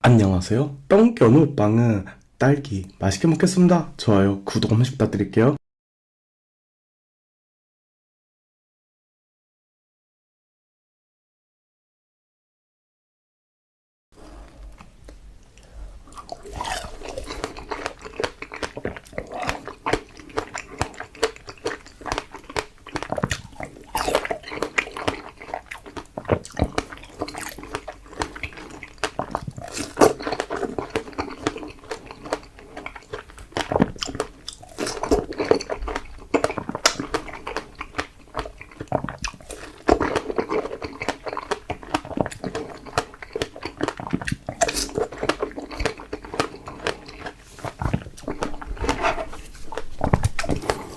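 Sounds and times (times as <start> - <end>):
chewing strawberries: 14.2 - 50.9
mouth smacks: 16.1 - 32.4, 33.6 - 50.9.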